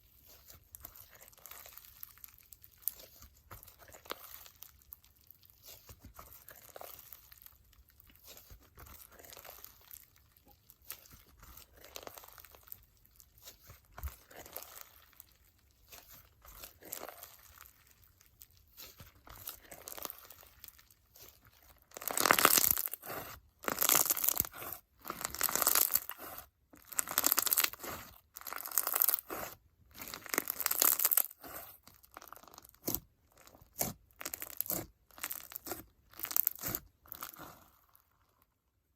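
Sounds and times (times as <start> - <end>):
slime crackling and crunching: 0.0 - 38.6.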